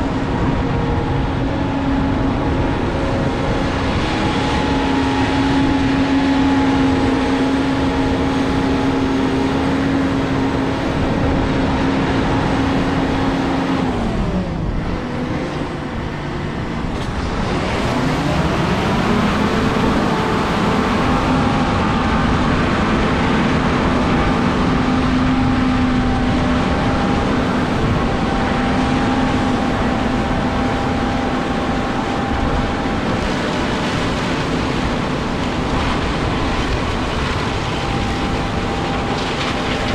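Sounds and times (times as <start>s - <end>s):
diesel engine droning: 0.0s - 39.9s.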